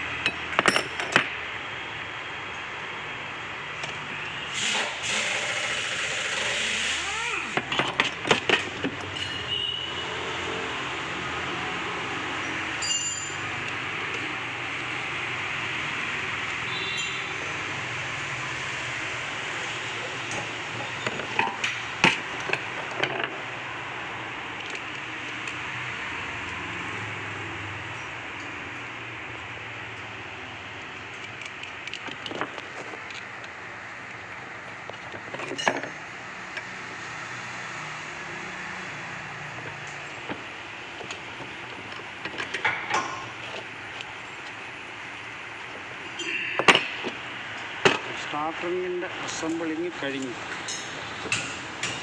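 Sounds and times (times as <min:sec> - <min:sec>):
metallic knocks and clinks: 0:00.2 - 0:01.3, 0:12.8 - 0:13.6, 0:35.4 - 0:36.0, 0:50.6 - 0:52.0.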